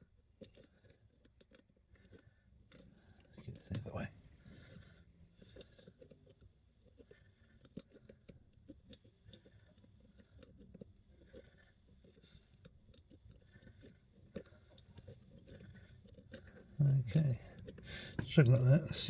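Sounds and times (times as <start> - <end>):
lock pick clicks and scrapes: 1.4 - 4.0.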